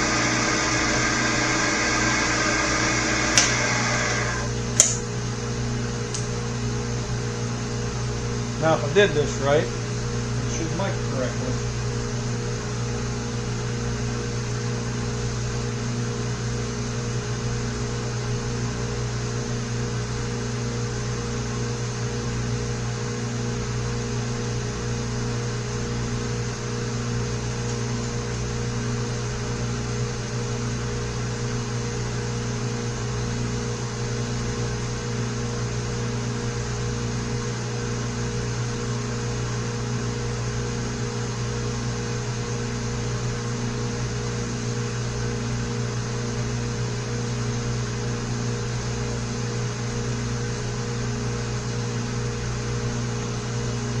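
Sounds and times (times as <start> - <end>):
electric motor humming: 0.0 - 4.6.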